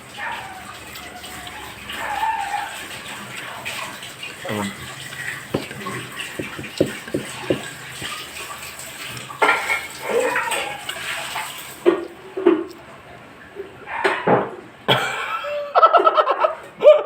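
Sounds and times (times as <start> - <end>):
mouth eating noises: 0.0 - 12.9
cutlery and dishes clicking: 5.5 - 8.3.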